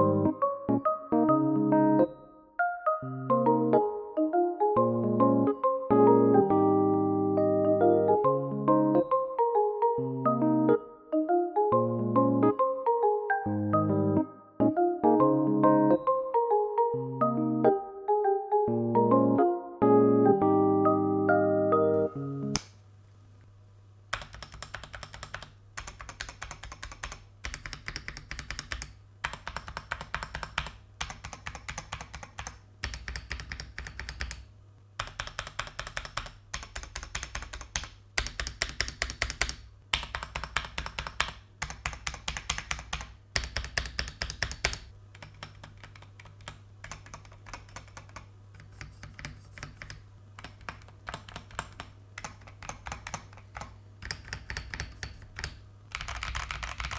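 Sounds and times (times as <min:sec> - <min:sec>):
mechanical keyboard typing: 0:24.1 - 0:56.9.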